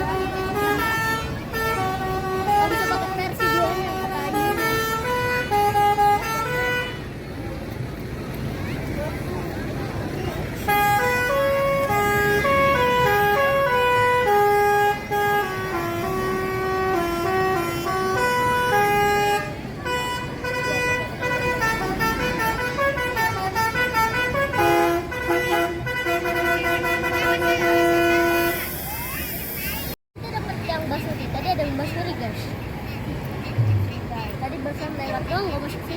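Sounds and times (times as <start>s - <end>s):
multi-tone bus air horn melody: 0.0s - 7.2s, 10.6s - 29.3s.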